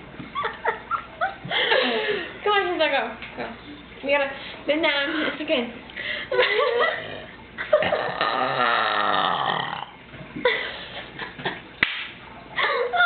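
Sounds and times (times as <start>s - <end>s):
long wavering burp: 7.0s - 10.0s.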